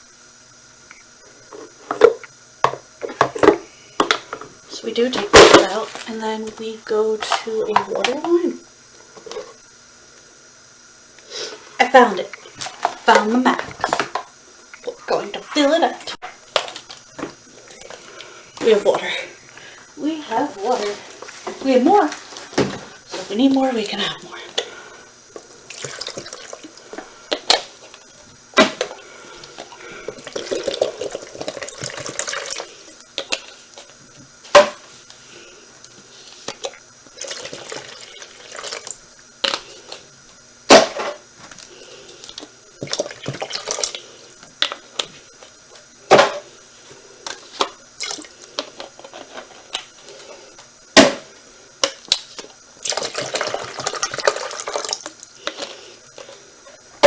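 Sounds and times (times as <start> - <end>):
water pouring into bowl: 25.4 - 27.0, 28.9 - 32.7, 37.1 - 39.0, 52.8 - 55.1.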